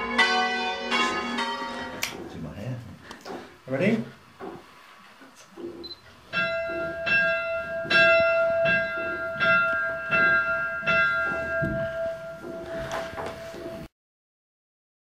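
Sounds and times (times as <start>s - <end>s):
church bells ringing: 0.0s - 2.6s, 6.2s - 13.9s.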